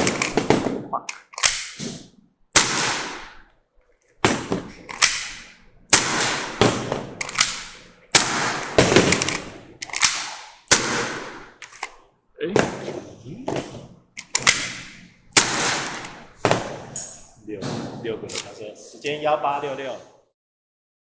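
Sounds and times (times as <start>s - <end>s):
airsoft pistol shots: 0.0s - 2.0s, 2.6s - 3.4s, 4.2s - 11.9s, 14.3s - 17.0s.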